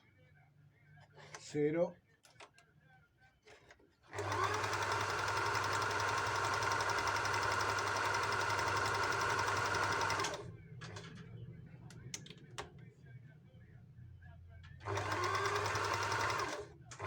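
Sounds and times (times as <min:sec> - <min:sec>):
electric sewing machine stitching: 0:04.1 - 0:10.5, 0:14.8 - 0:17.0.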